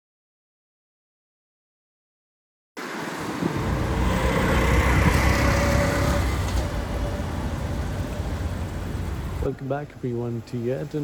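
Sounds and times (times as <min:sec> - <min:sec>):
loud engine rumble with whine: 0:03.4 - 0:09.6.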